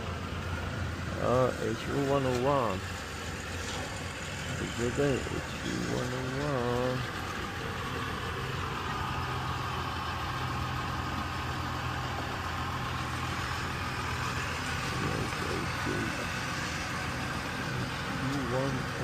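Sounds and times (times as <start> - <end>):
vehicle engine idling: 0.0 - 19.0
faint voices: 4.5 - 9.2, 13.2 - 19.0.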